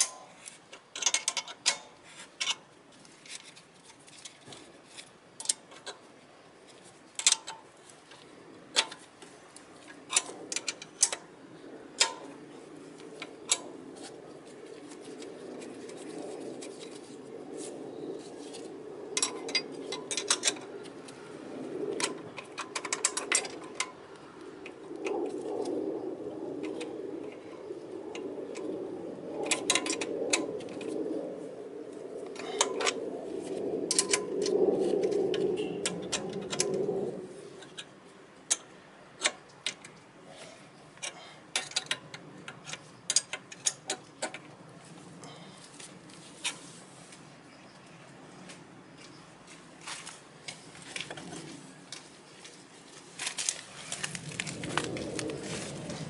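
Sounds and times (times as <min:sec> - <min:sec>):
metallic clicks of hand tools: 0:00.0 - 0:02.6, 0:07.2 - 0:07.6, 0:41.0 - 0:44.4
low rustling and scraping: 0:48.4 - 0:56.0.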